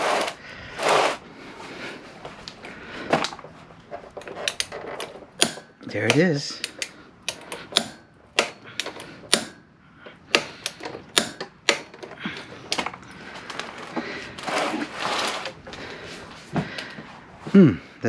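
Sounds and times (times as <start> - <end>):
rasping scrape: 0.0 - 1.8, 13.6 - 16.3.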